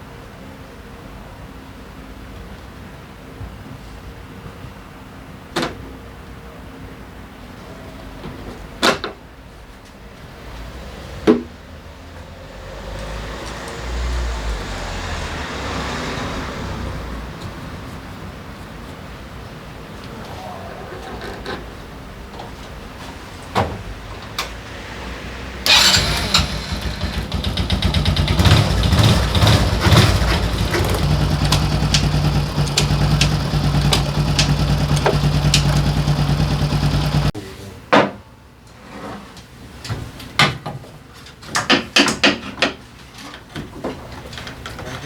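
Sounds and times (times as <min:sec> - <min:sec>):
motorcycle engine starting and idling: 0:25.6 - 0:37.4
knocks and clicks: 0:27.7 - 0:37.3.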